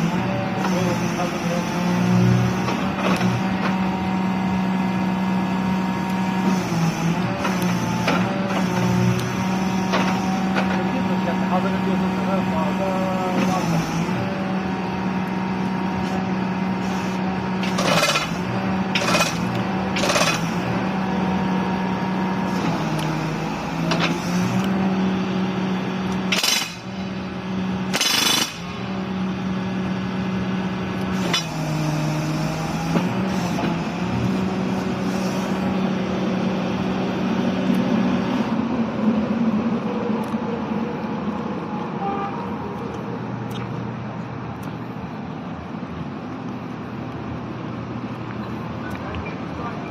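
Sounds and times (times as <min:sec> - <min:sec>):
excavator engine running: 0:00.0 - 0:49.9
hydraulic rock drill bursts: 0:16.8 - 0:20.7, 0:26.2 - 0:27.1, 0:27.8 - 0:28.8, 0:31.1 - 0:35.6.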